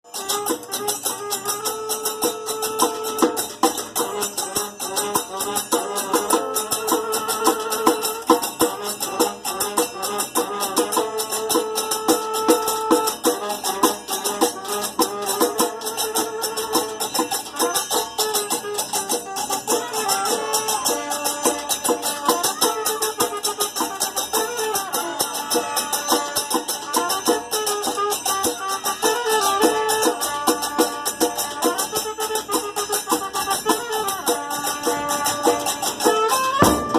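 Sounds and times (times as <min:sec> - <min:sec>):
drums and shakers rhythm: 0:00.0 - 0:36.9
melody of held notes: 0:27.1 - 0:36.9.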